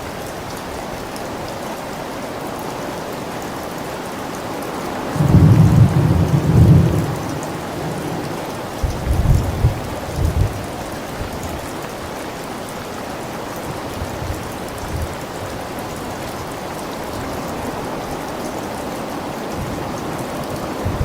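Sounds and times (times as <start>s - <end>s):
steady rain: 0.0s - 21.0s
low thunder rumbles: 5.2s - 10.8s, 19.6s - 21.0s.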